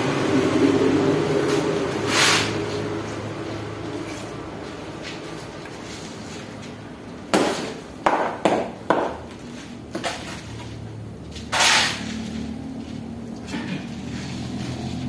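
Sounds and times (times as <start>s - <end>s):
scraping rush: 11.4s - 12.8s.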